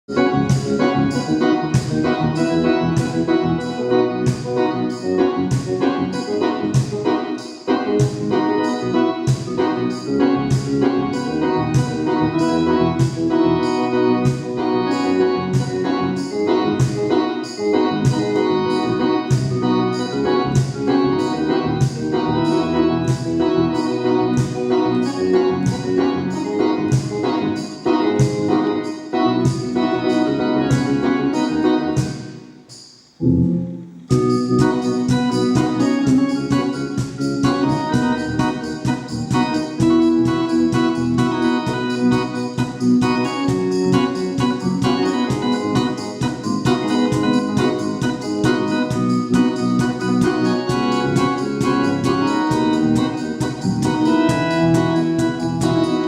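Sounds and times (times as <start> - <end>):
keyboard chords: 0.0 - 56.0
sharp bright drum beat: 34.1 - 56.0.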